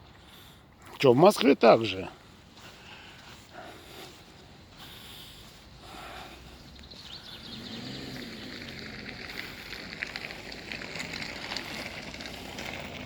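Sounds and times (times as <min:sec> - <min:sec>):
dense irregular crackle: 0:08.2 - 0:13.0.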